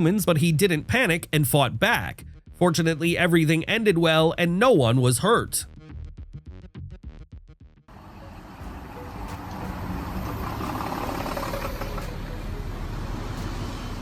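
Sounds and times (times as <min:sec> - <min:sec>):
electronic music: 0:07.9 - 0:14.0
street traffic rumble: 0:07.9 - 0:14.0.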